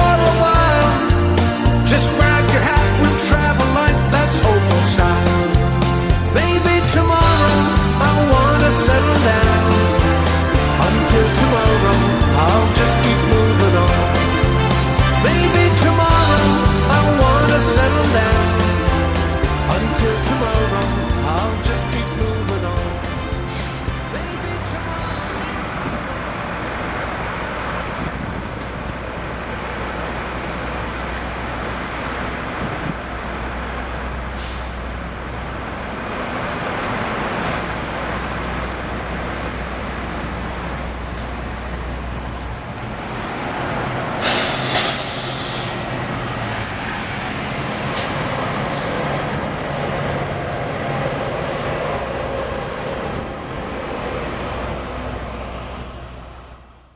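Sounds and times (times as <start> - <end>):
train rumbling: 0.0 - 56.9
loud hiss: 44.2 - 46.0.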